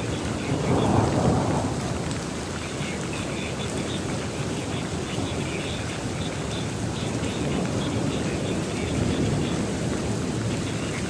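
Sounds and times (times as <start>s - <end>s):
rain falling: 0.0s - 11.0s
rolling thunder: 0.1s - 2.5s.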